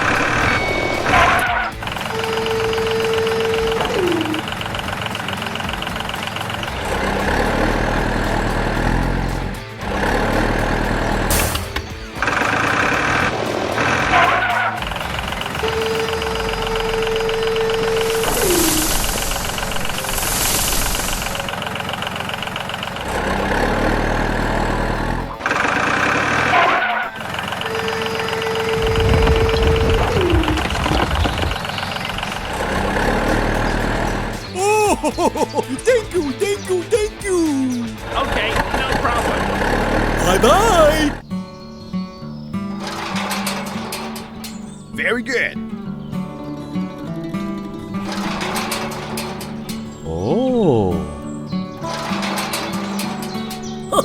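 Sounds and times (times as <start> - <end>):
toy engine whine: 0.0 - 36.5
low engine rumble: 27.1 - 34.6.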